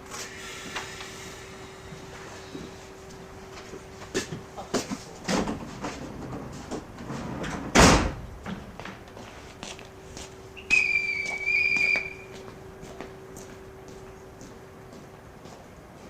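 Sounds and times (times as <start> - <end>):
door shutting with a thud: 7.2 - 8.7
high whistle blast: 10.6 - 12.4.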